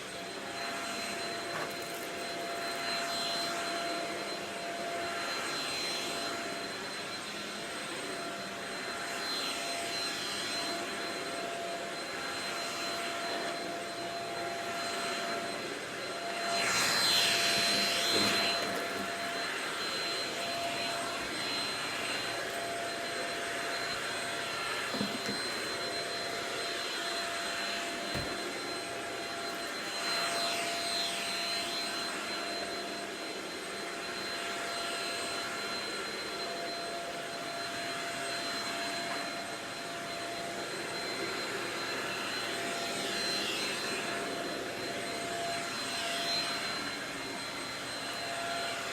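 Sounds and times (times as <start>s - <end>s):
stick vacuum running: 9.9s - 34.6s.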